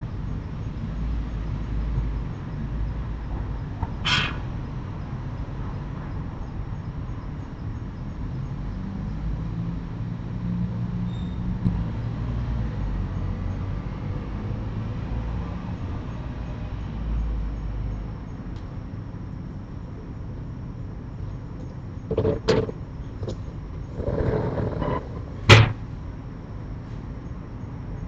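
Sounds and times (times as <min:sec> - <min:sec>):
low rumbling: 0:22.0 - 0:26.0.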